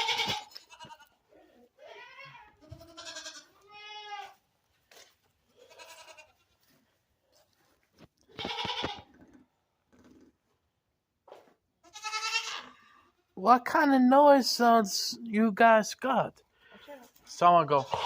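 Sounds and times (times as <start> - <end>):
goats bleating: 0.0 - 4.4, 5.5 - 6.6, 8.3 - 9.1, 11.8 - 13.1, 17.7 - 18.0.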